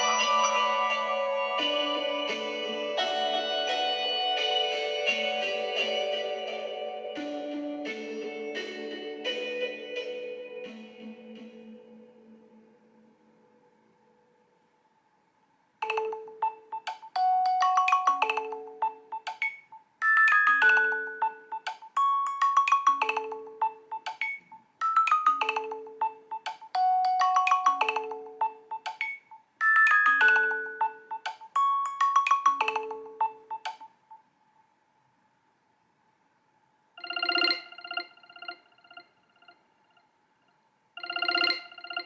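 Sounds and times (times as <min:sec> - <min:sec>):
phone ringtone melody: 0:00.0 - 0:12.4, 0:15.8 - 0:33.9, 0:37.0 - 0:40.0, 0:41.0 - 0:42.0.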